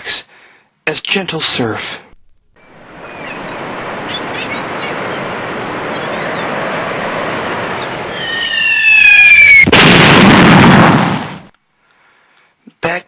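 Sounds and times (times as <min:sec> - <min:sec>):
ocean surf washing: 0:02.7 - 0:09.7
loud explosion: 0:03.6 - 0:11.5
falling whistle: 0:08.1 - 0:09.7.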